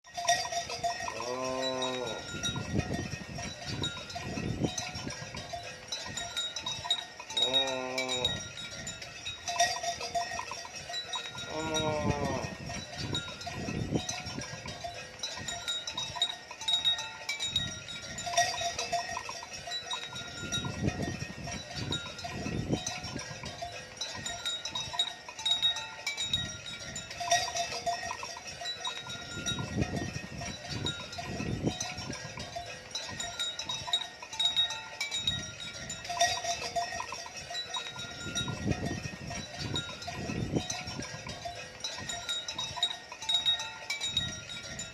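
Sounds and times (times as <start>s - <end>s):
cowbells clanking: 0.0s - 44.9s
cow calling: 1.0s - 2.4s, 7.4s - 8.5s, 11.4s - 12.6s.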